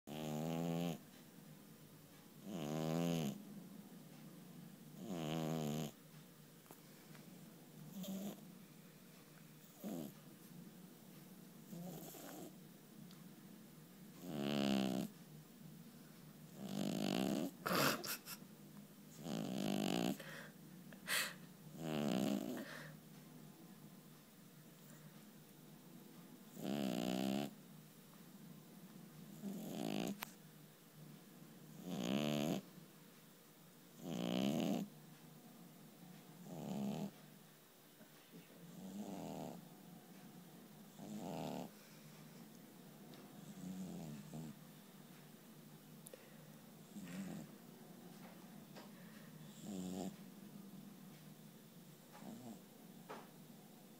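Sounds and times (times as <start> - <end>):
cat snoring: 0.1 - 1.0, 2.4 - 3.4, 5.0 - 6.0, 7.8 - 8.4, 9.6 - 10.2, 11.7 - 12.6, 14.2 - 15.1, 16.5 - 18.0, 19.1 - 20.4, 21.7 - 22.9, 26.5 - 27.6, 29.3 - 30.3, 31.7 - 32.6, 34.0 - 34.9, 36.4 - 37.2, 38.7 - 39.6, 40.9 - 41.8, 43.4 - 44.6, 46.8 - 47.5, 49.4 - 50.2, 52.2 - 52.6.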